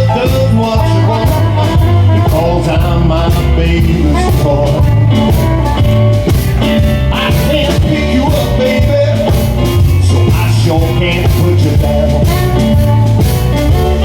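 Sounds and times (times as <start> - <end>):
rock and roll band playing: 0.0 - 14.0
steady drum beat: 0.0 - 14.0
strong bass line: 0.0 - 14.0.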